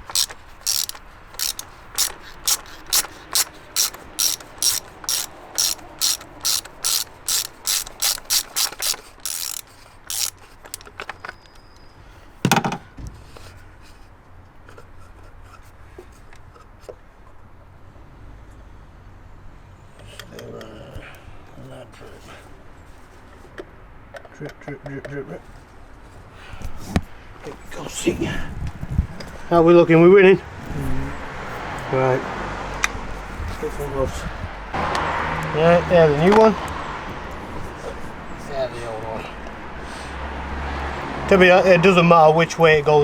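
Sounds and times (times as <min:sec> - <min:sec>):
ratchet wrench clicking: 0:00.0 - 0:10.9.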